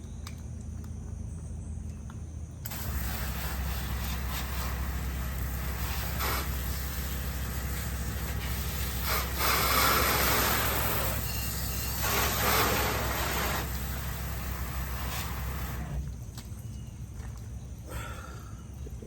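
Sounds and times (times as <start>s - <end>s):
low machine hum: 0.0s - 19.0s
spray nozzle hissing: 2.6s - 16.0s.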